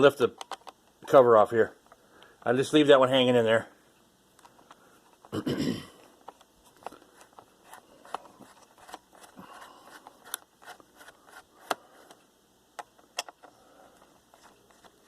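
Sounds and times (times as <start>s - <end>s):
screwdriver clicking and scraping: 6.2s - 12.2s.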